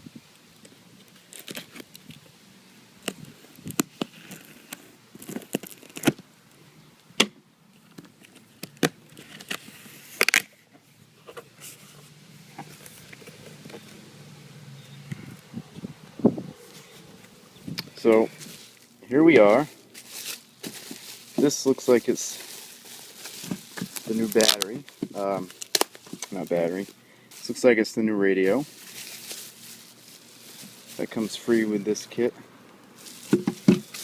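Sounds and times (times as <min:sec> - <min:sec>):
cardboard box being unpacked: 0:03.1 - 0:06.2, 0:08.2 - 0:10.6, 0:19.5 - 0:27.5, 0:33.0 - 0:34.0.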